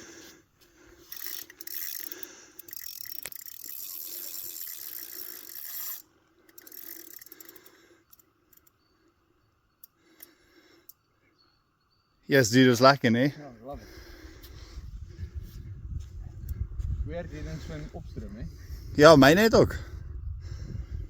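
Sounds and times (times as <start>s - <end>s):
fishing reel whirring: 0.9s - 8.9s.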